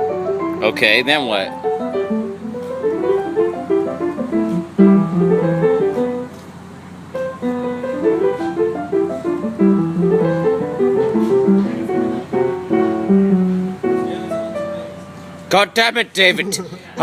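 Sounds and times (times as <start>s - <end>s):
piano playing: 0.0s - 17.0s.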